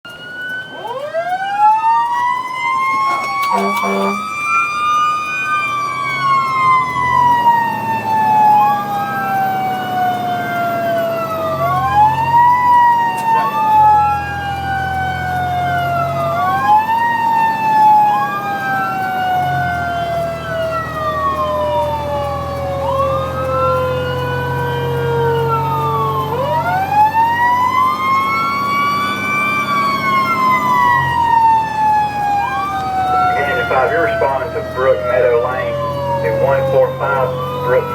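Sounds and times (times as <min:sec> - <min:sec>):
electronic siren wailing: 0:00.1 - 0:37.9
mechanical siren winding: 0:00.1 - 0:37.9
truck engine running: 0:00.1 - 0:37.9
horn blast: 0:02.9 - 0:04.5.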